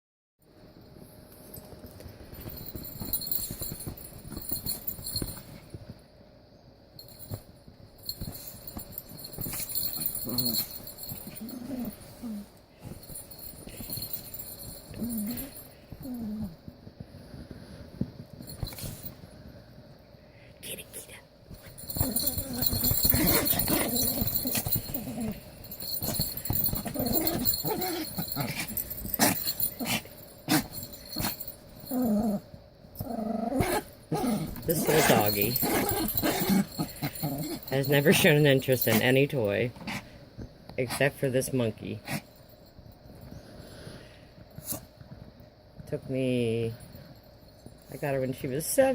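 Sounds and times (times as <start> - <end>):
scuffling and rustling: 8.0 - 16.2, 21.5 - 31.9, 33.6 - 39.2
dog growling: 9.8 - 12.6, 14.9 - 16.6, 21.9 - 32.4, 33.0 - 38.3.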